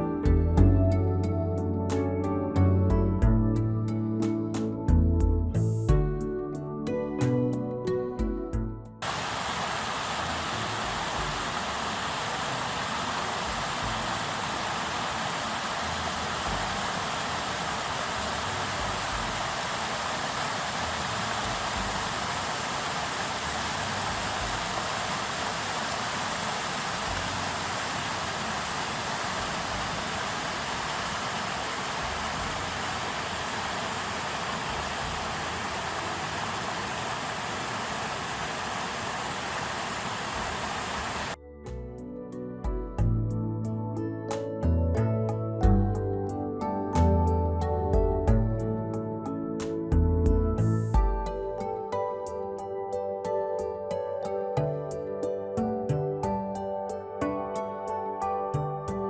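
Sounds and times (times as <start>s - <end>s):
river water rushing: 9.0s - 41.4s.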